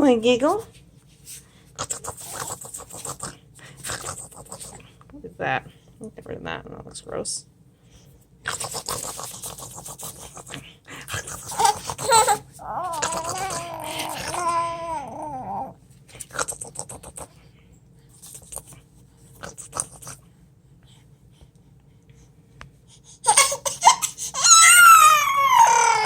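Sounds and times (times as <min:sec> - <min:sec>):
infant squealing cry: 0:11.5 - 0:15.7, 0:23.2 - 0:26.0
infant wailing: 0:11.5 - 0:15.8, 0:23.3 - 0:26.0.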